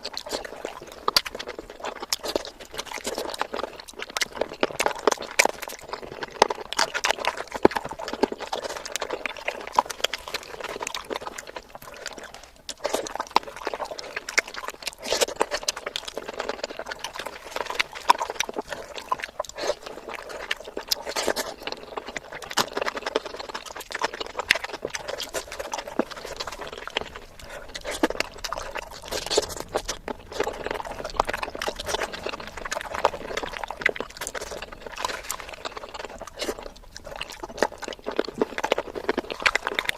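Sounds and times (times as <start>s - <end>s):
wet chewing and lip-smacking: 0.0s - 39.9s.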